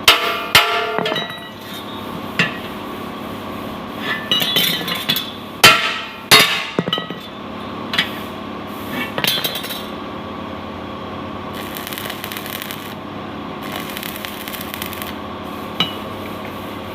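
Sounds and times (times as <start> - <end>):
constant machine hum: 0.0 - 16.9
steady high hiss: 11.5 - 13.0, 13.6 - 15.8.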